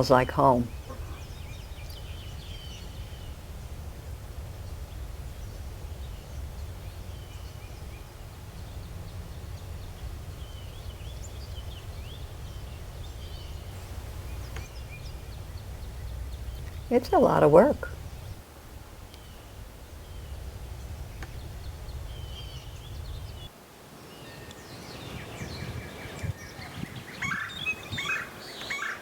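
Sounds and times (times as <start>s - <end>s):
steady low rumble: 0.0s - 23.5s
faint bird chirps: 0.6s - 3.7s, 4.6s - 23.5s.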